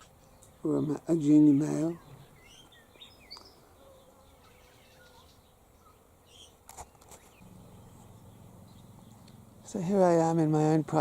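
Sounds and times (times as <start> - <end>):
thin insect hum: 0.0 - 11.0
bird chirps: 1.7 - 9.7.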